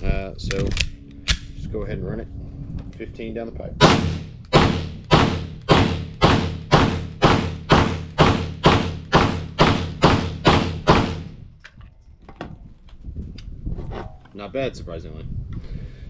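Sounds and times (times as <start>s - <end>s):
gun handling clicks: 0.5s - 1.5s
pistol shots: 3.8s - 11.4s.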